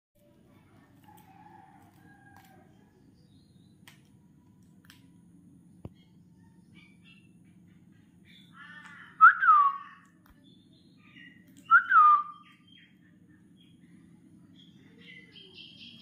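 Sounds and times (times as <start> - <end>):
parrot whistled calls: 11.6 - 12.6.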